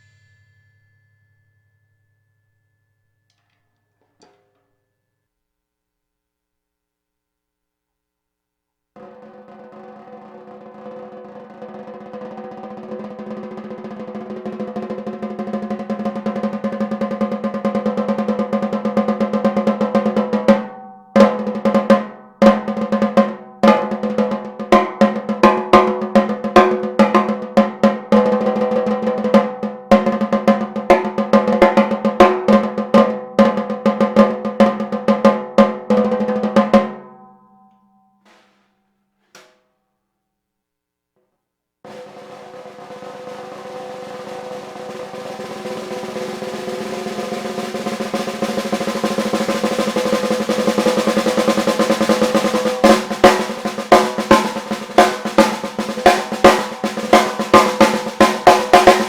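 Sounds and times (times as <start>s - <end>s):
ringing drum overtones: 0.0s - 4.8s, 9.0s - 37.7s, 41.9s - 59.0s
snare drum roll: 9.0s - 37.0s, 38.3s - 38.7s, 41.9s - 59.0s
accented snare strokes: 41.9s - 59.0s.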